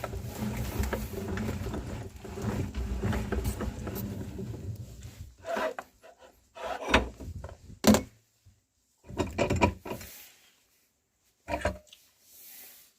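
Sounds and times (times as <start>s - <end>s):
scraping and rubbing: 0.0s - 7.4s.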